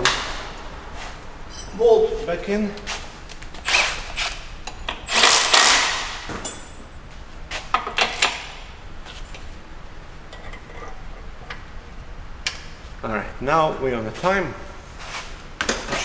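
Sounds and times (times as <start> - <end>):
scraping rustle: 14.1 - 16.0.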